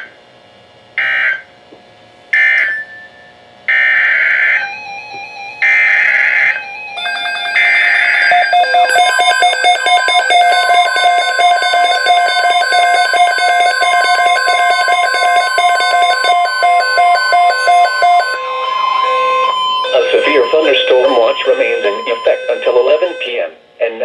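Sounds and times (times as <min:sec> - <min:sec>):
alarms beeping rapidly: 0:02.4 - 0:23.4
steady warning tone: 0:02.4 - 0:23.6
digital header tones: 0:07.0 - 0:23.4.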